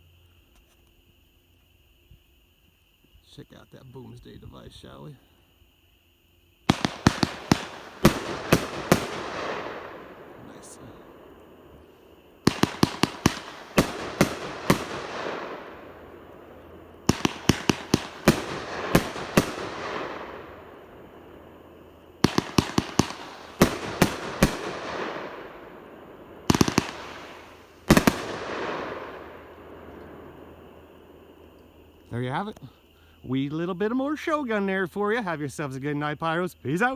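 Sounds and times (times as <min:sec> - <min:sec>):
firework cake bangs: 0:06.7 - 0:21.2, 0:22.2 - 0:25.8, 0:26.4 - 0:29.4.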